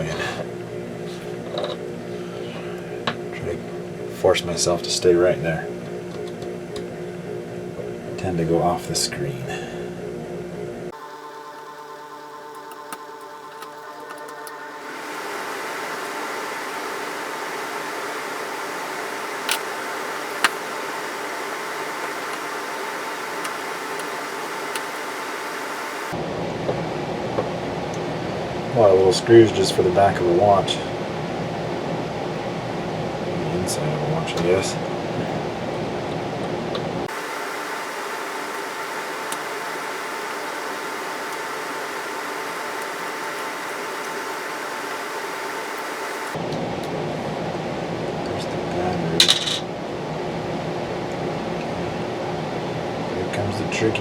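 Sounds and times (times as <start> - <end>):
faint hum: 0.0 - 54.0
background hiss: 14.8 - 26.2
fan-like background hiss: 14.8 - 54.0.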